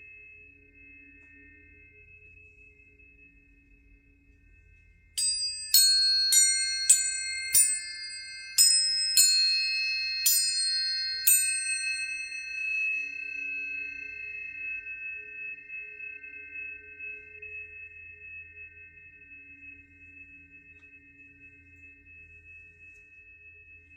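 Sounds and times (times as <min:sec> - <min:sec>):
tuning forks struck and ringing: 0:04.7 - 0:23.2.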